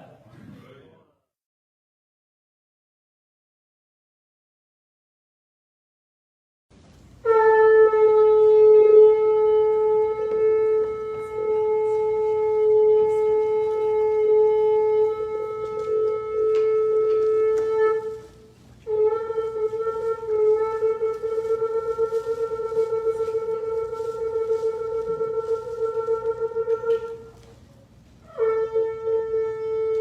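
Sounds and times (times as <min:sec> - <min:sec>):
horn blast: 0:07.2 - 0:27.4, 0:28.2 - 0:30.0.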